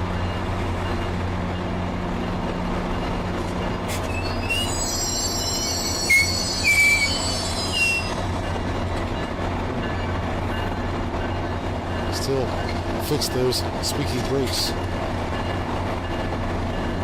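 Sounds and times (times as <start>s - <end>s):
train low rumble: 0.0s - 17.0s
train brakes squealing: 3.9s - 10.8s.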